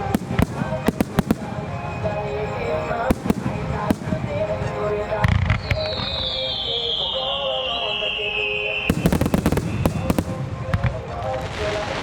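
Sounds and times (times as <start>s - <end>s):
firework shells booming: 0.0s - 5.6s, 8.9s - 11.1s
firework bangs and crackles: 0.0s - 7.2s, 8.8s - 12.0s
whistling firework falling in pitch: 0.0s - 12.0s.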